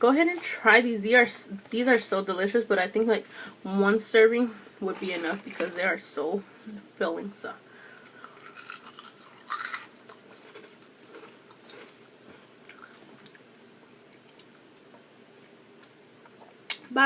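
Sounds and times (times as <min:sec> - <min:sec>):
eating bites: 0:08.2 - 0:14.5.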